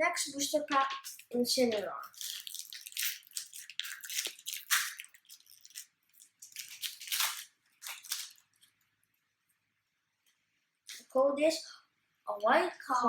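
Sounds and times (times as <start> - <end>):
foil wrapper tearing and crinkling: 2.0 - 8.8.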